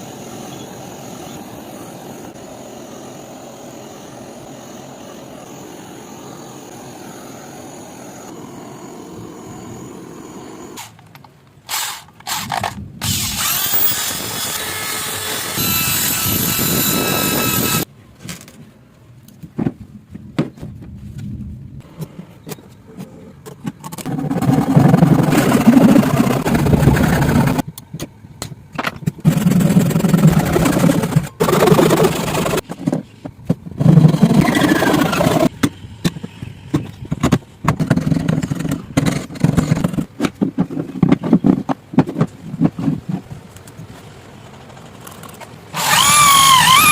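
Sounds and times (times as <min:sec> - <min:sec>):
scraping and cutting wood: 0:23.8 - 0:27.6, 0:28.9 - 0:43.7, 0:45.0 - 0:46.9
motor whining: 0:45.8 - 0:46.9.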